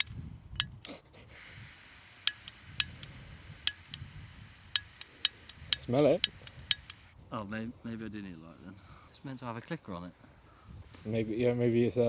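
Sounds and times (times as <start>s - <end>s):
sharp clicks: 0.0s - 0.9s, 2.3s - 3.1s, 3.7s - 4.0s, 4.8s - 7.0s.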